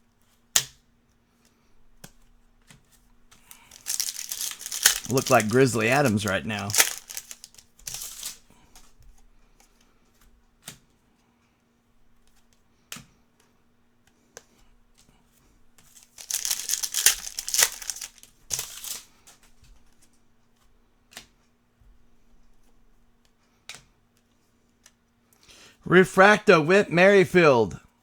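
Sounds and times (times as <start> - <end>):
packaging crinkling and tearing: 3.6 - 8.4, 16.0 - 19.0.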